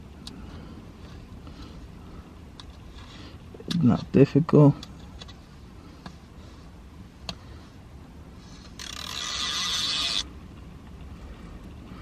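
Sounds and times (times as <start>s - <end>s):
tape liner peeling tear: 8.8s - 10.3s.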